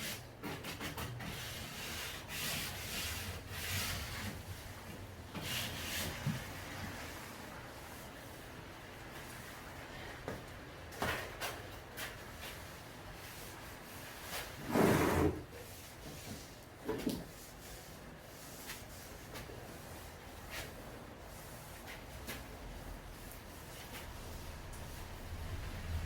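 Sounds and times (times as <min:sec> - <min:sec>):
rubbing scrape: 0:00.0 - 0:04.6, 0:13.2 - 0:16.6.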